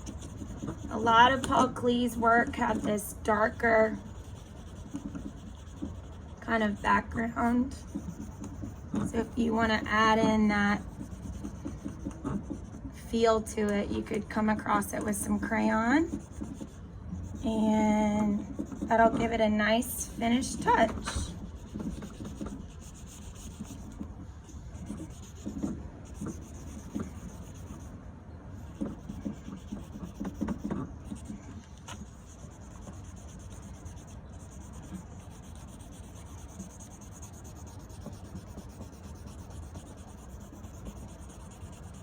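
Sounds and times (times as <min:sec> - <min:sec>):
crayon rubbing on paper: 0:00.0 - 0:13.0, 0:14.0 - 0:27.9, 0:28.6 - 0:42.0.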